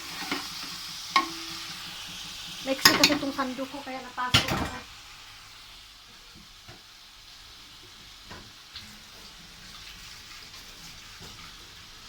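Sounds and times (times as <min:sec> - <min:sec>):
squid sizzling in a pan: 0:00.0 - 0:12.0.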